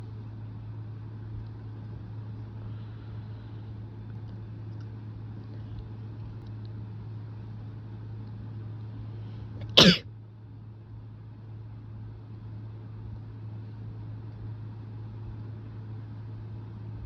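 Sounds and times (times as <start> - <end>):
steady low hum: 0.0 - 17.0
person sneezing: 9.6 - 10.0.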